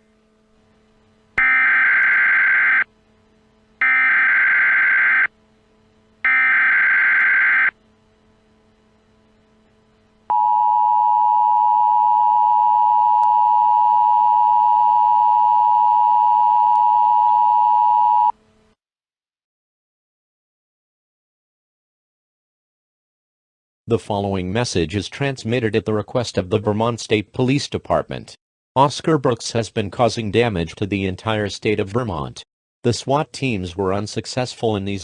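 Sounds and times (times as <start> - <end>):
two-tone attention signal: 1.4 - 2.9
buzzy digital data bursts: 3.8 - 5.3.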